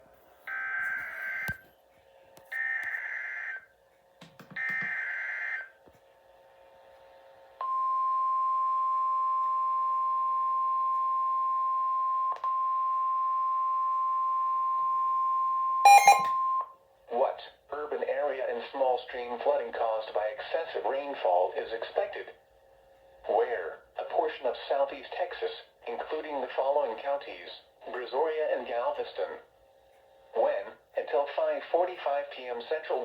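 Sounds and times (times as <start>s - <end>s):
steady attention tone: 15.9s - 16.4s.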